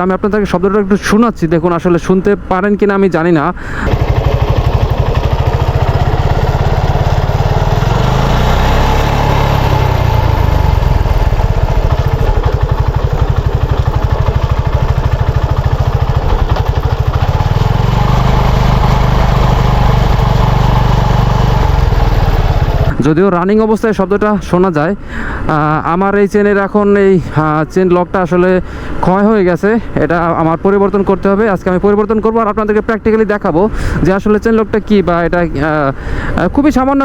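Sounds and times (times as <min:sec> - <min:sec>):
motorcycle engine revving: 0:03.8 - 0:23.0.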